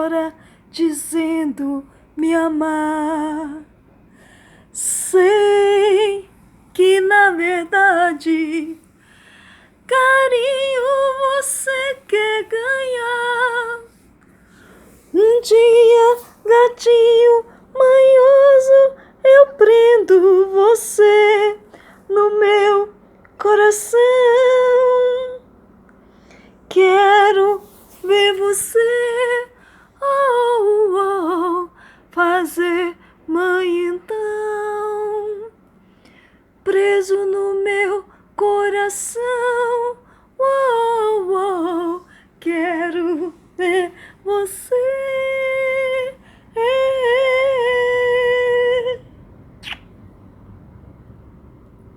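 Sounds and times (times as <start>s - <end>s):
woman singing unaccompanied: 0.0s - 3.8s, 4.7s - 9.0s, 9.8s - 14.1s, 14.9s - 25.5s, 26.7s - 35.6s, 36.6s - 49.2s.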